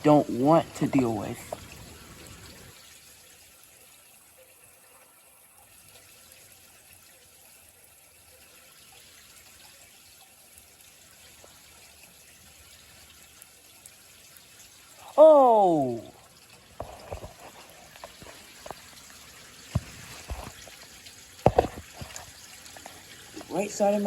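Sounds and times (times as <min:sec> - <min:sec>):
trickle of running water: 0:00.0 - 0:24.0
rain falling: 0:14.8 - 0:24.0.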